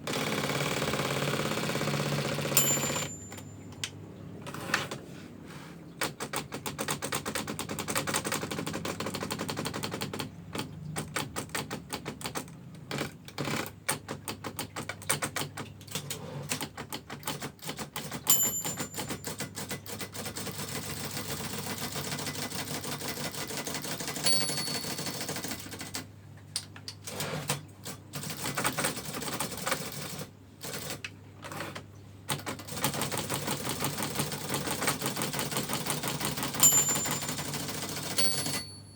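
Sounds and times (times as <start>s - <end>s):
typewriter key strikes: 2.3s - 3.9s, 6.0s - 20.2s, 23.4s - 25.9s, 31.5s - 38.8s
typewriter margin bell ding: 2.4s - 3.8s, 18.0s - 19.5s, 24.0s - 25.8s, 35.9s - 38.9s.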